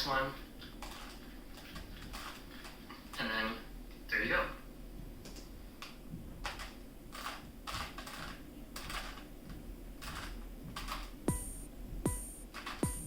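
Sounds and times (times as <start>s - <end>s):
music with falling note: 11.3s - 13.0s.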